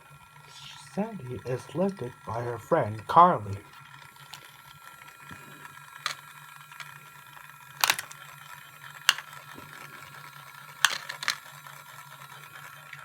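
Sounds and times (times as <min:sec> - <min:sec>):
toy train motor humming: 0:00.0 - 0:13.0
plastic mechanism clicking: 0:05.2 - 0:07.0, 0:07.8 - 0:11.6.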